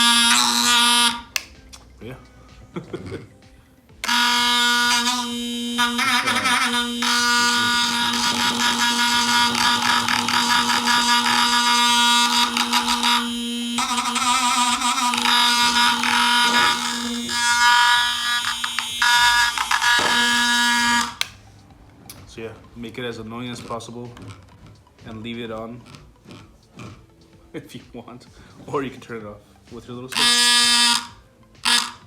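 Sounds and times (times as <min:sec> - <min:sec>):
vibration motor rattling in cup: 0:00.0 - 0:01.3, 0:04.0 - 0:21.2, 0:23.6 - 0:27.1, 0:30.2 - 0:32.0.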